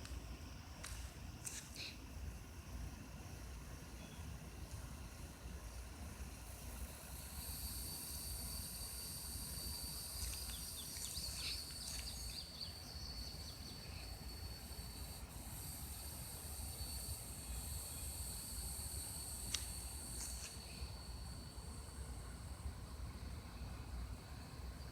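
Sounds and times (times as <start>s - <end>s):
insect chorus: 0.4s - 24.9s
sharp click: 19.5s - 20.6s.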